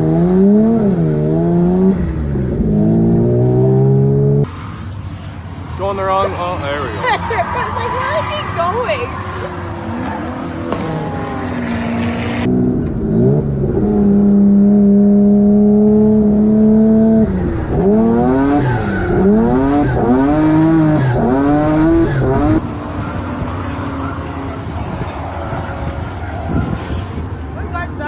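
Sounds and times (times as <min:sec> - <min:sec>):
car engine revving: 0:00.0 - 0:04.6, 0:09.3 - 0:22.7.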